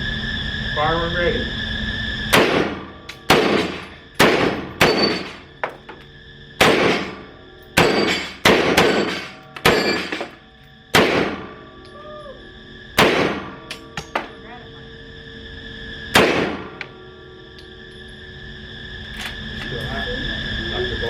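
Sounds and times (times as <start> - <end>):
gunshots with short echo: 2.3 - 5.4, 6.6 - 7.2, 7.8 - 10.3, 11.0 - 11.5, 13.0 - 13.6, 16.2 - 16.8.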